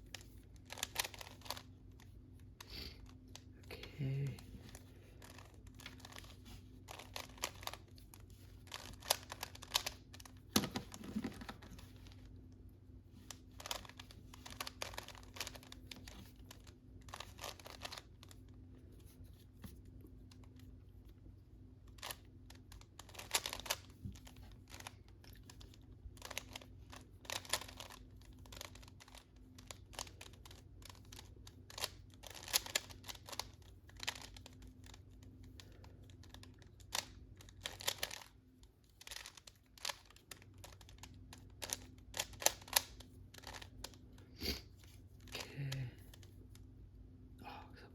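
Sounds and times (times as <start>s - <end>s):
faint steady hum: 0.0s - 47.9s
plastic puzzle cube clicking: 0.1s - 1.7s, 5.2s - 8.0s, 8.7s - 11.9s, 13.2s - 18.4s, 21.9s - 38.3s, 39.0s - 44.0s.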